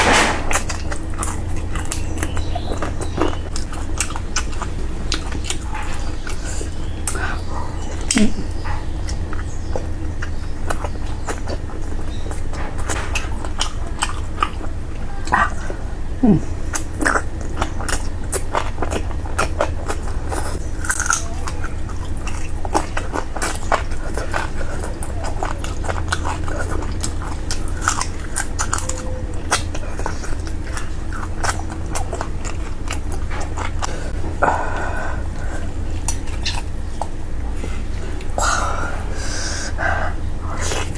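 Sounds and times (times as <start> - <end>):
chewing and biting food: 0.0 - 40.9
steady low hum: 0.0 - 40.9.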